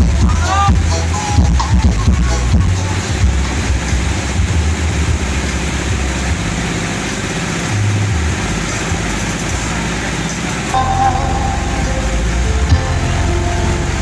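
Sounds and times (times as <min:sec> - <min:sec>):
loud distorted bass music: 0:00.0 - 0:06.7.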